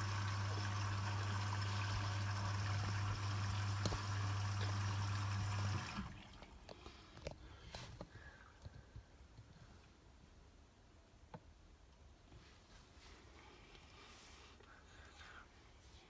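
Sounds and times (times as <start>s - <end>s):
washing machine filling with water: 0.0s - 6.6s.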